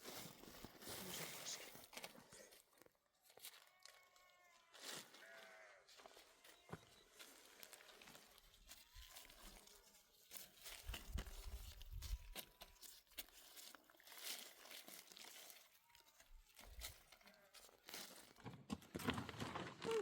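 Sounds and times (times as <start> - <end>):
distant livestock bleats: 3.6 - 8.0.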